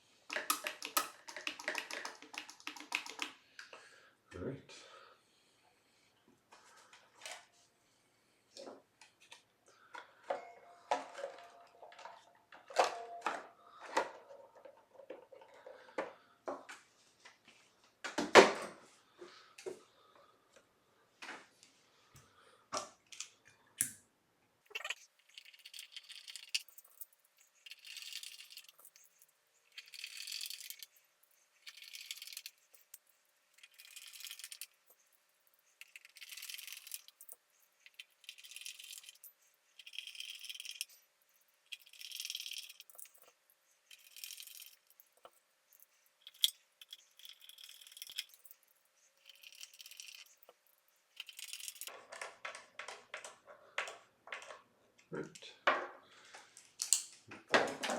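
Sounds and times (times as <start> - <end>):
tools clicking and tapping: 0.3 - 3.4, 31.6 - 41.0, 41.7 - 54.6.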